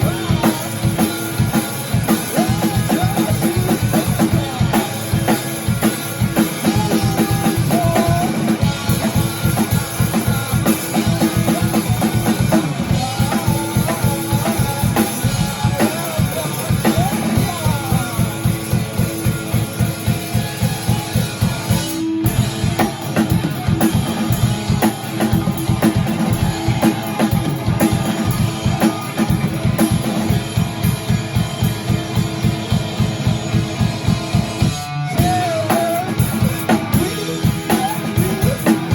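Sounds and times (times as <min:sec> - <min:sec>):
rock band playing: 0:00.0 - 0:38.9.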